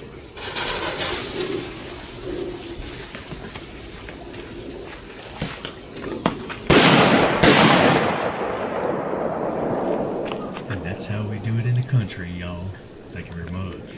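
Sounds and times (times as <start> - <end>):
pyrotechnic explosive bangs: 6.2 - 13.9.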